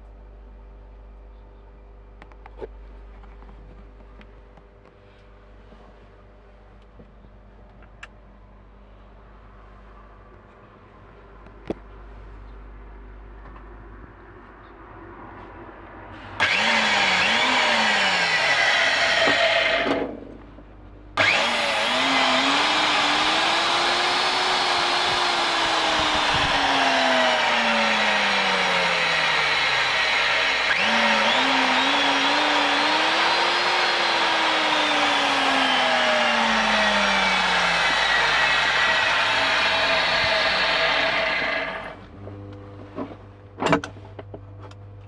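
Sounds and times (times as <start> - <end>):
drilling machine motor whining: 16.4 - 20.0, 21.2 - 42.0.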